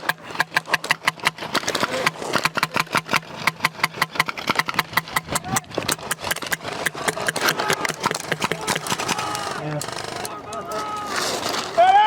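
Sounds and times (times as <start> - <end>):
airsoft guns firing rapidly: 0.0 - 10.5.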